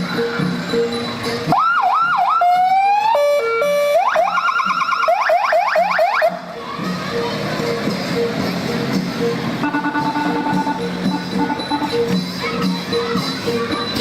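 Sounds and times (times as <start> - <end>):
electronic siren: 9.6 - 12.0.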